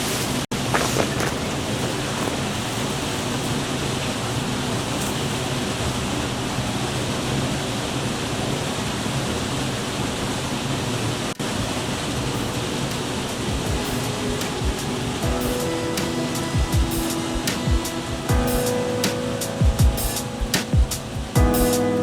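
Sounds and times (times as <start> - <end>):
steady rushing noise: 0.0 - 22.0.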